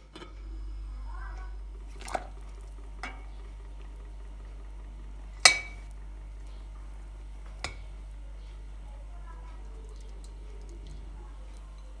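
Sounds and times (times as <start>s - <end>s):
steady low hum: 0.0s - 12.0s
dishware clinking: 5.4s - 5.9s, 7.6s - 8.0s.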